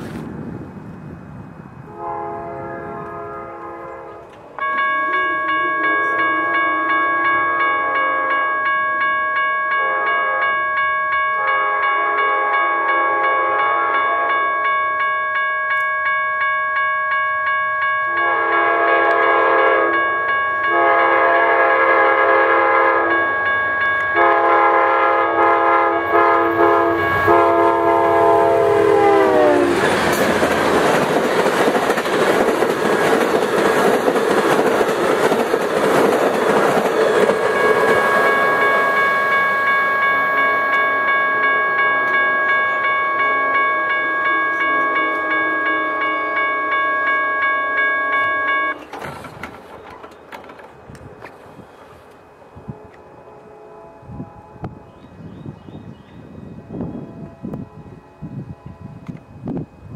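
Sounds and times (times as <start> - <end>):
train wheel and rail noise: 0.0 - 59.9
locomotive horn blasts: 1.9 - 8.8, 9.7 - 14.8, 18.0 - 30.4, 37.1 - 48.9, 52.5 - 55.1, 56.6 - 59.3
crossing signal bells ringing: 1.9 - 50.6.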